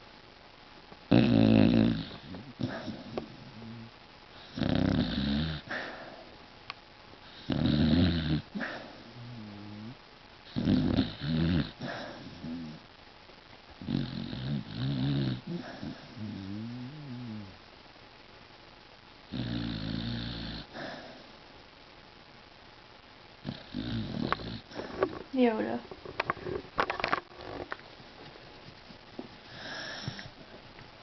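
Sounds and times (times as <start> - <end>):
dog snoring: 1.1 - 6.1, 7.2 - 12.8, 13.8 - 17.6, 19.3 - 21.2, 23.4 - 25.1, 29.5 - 30.5.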